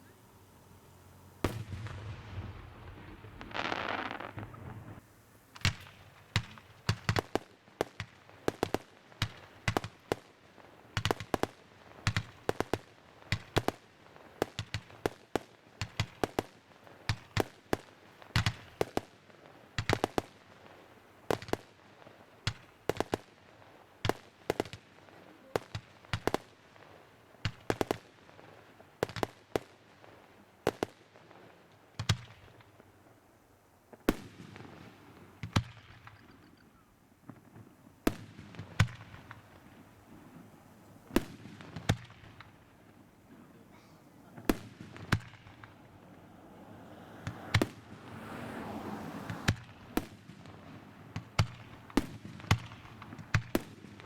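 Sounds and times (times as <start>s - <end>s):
firework shells bursting: 1.4s - 7.4s
firework hissing rush: 3.2s - 5.4s.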